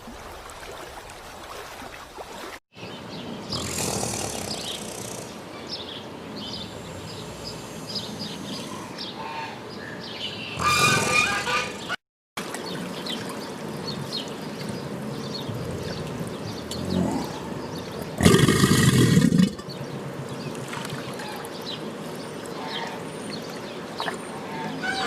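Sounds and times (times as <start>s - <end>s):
faint chirps: 6.4s - 9.0s.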